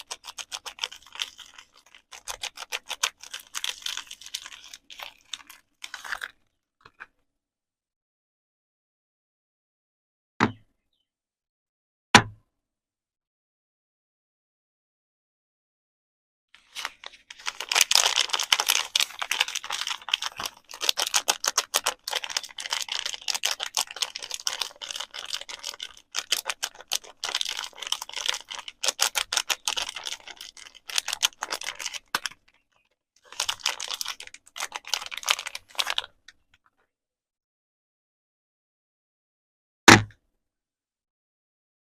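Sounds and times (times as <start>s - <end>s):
packaging clicking and crackling: 0.0s - 6.3s, 16.7s - 32.6s, 33.3s - 36.1s.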